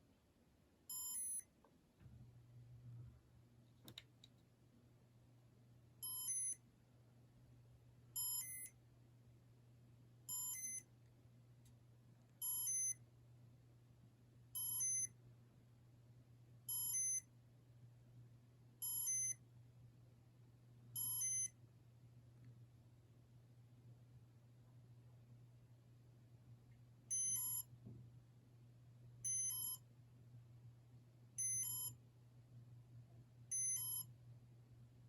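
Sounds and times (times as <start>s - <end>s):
faint steady low hum: 0.0s - 35.0s
ceiling fan beeper chirping: 0.9s - 1.5s, 6.0s - 6.6s, 8.2s - 8.8s, 10.3s - 10.9s, 12.4s - 13.0s, 14.6s - 15.2s, 16.7s - 17.3s, 18.8s - 19.4s, 21.0s - 21.6s, 27.1s - 27.7s, 29.2s - 29.9s, 31.4s - 32.0s, 33.5s - 34.2s.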